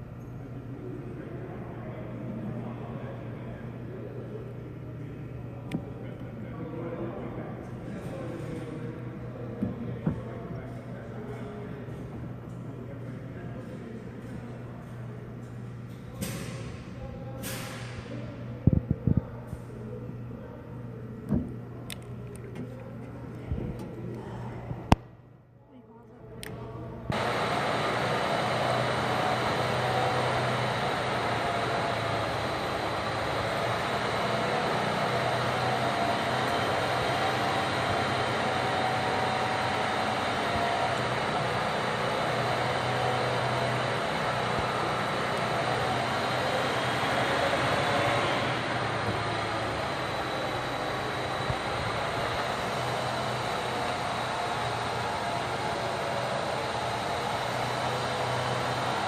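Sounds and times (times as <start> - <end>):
heat gun blower rush: 27.1 - 59.0.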